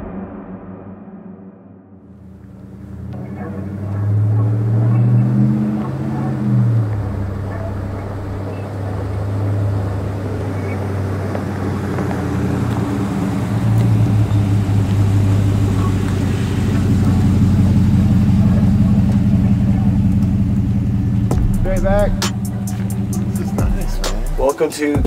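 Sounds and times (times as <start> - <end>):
vehicle engine humming: 2.1 - 25.0.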